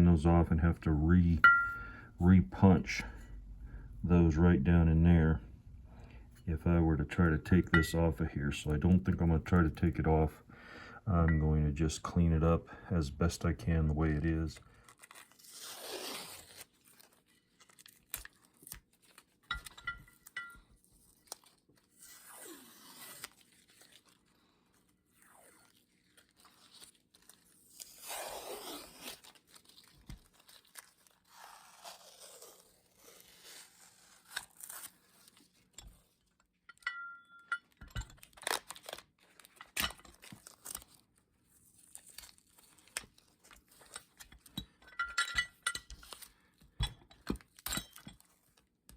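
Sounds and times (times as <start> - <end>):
metallic clinks: 1.4 - 2.0, 19.5 - 20.6, 36.7 - 37.7, 44.9 - 45.9.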